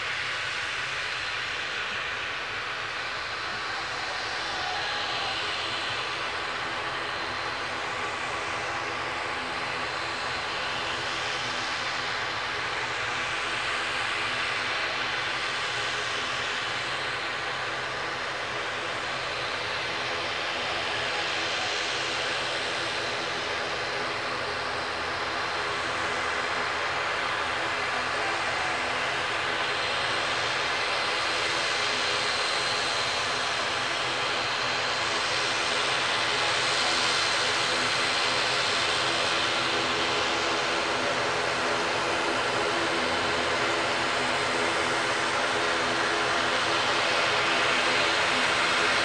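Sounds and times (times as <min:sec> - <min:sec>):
aircraft engines running: 0:00.0 - 0:49.0.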